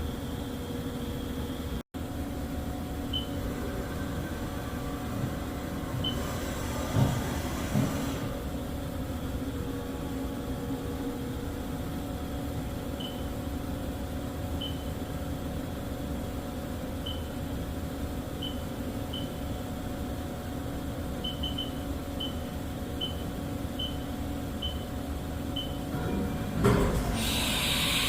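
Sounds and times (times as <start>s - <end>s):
machine humming: 2.0s - 13.2s, 25.8s - 28.0s.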